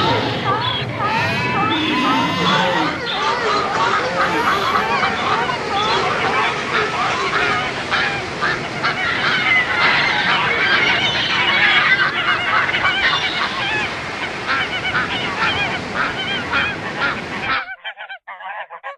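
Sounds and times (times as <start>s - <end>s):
animals chattering: 0.0s - 7.9s.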